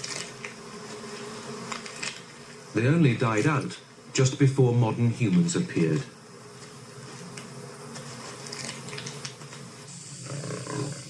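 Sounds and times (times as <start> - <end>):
steady high hiss: 0.0 - 11.0
low animal sounds: 10.2 - 11.0.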